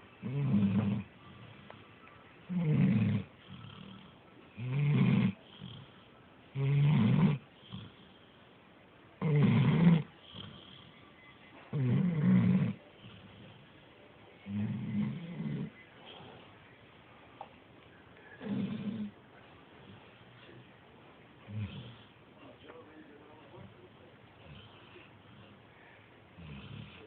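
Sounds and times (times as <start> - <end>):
pet snoring: 0.2 - 1.1, 2.5 - 8.2, 9.2 - 11.0, 11.7 - 13.8, 14.4 - 16.4, 18.4 - 19.2, 21.5 - 22.2, 26.4 - 27.0
faint breaths: 5.3 - 6.5, 7.4 - 8.9, 12.7 - 27.0.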